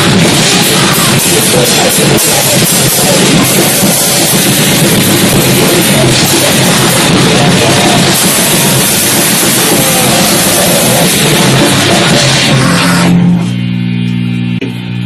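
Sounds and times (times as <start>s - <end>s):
distorted heavy rock music: 0.0s - 15.0s
held distorted guitar chord: 0.0s - 15.0s.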